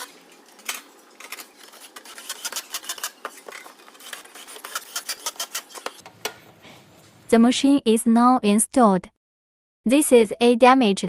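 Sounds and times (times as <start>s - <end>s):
parts clicking and scraping: 0.0s - 6.6s.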